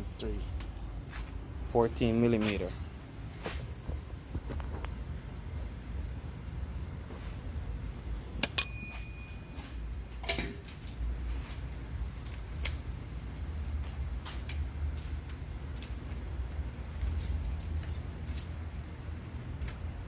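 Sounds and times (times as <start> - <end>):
metallic clink: 8.4 - 10.4.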